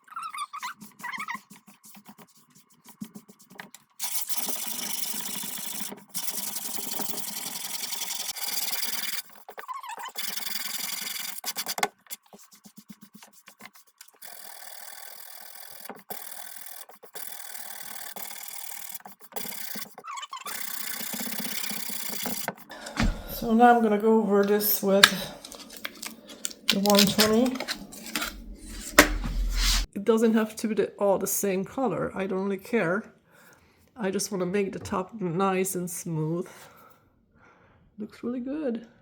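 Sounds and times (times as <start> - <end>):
sandpaper sanding wood: 0.7 - 14.2, 26.8 - 29.9.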